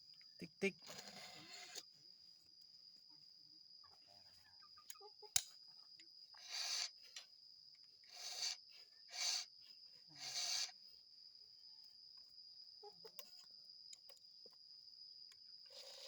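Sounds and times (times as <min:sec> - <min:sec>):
sharp click: 0:05.3 - 0:05.5
file rasping on chain teeth: 0:10.2 - 0:10.8.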